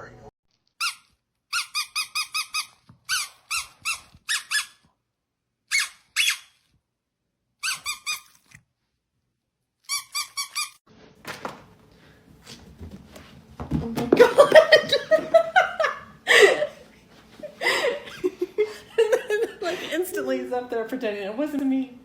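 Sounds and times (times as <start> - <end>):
high-pitched squeaks: 0.8 - 4.9, 5.7 - 6.6, 7.6 - 8.6, 9.9 - 10.8.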